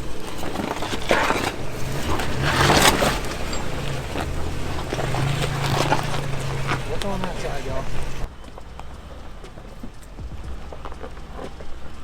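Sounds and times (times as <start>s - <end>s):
car engine running: 0.0s - 8.3s
tyres crunching over loose rock: 0.0s - 8.3s.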